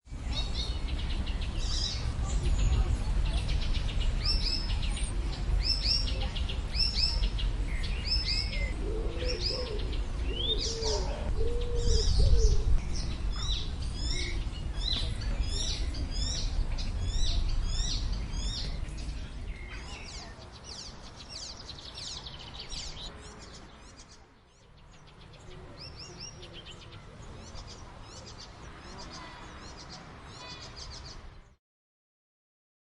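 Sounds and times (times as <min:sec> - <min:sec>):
warbler singing: 0:00.1 - 0:31.6
low rumble: 0:11.2 - 0:19.6.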